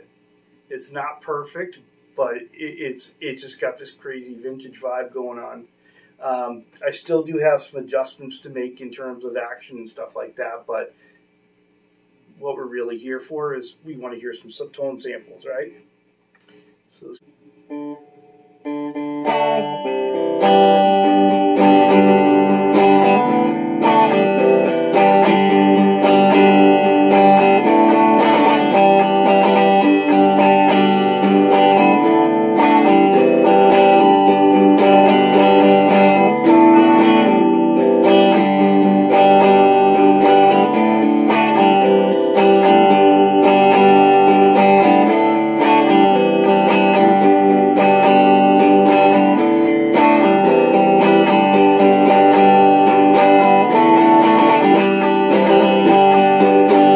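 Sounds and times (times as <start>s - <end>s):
electric guitar chords strummed: 17.6s - 56.9s.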